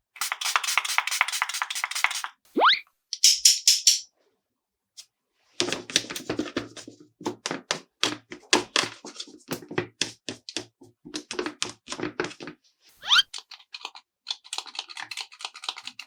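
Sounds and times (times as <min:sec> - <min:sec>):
plastic toy pieces clicking: 0:13.3 - 0:16.0.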